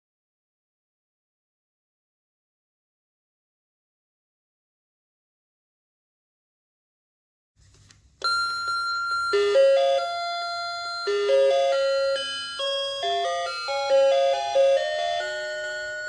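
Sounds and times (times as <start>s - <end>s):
electronic chime melody: 8.3s - 16.0s.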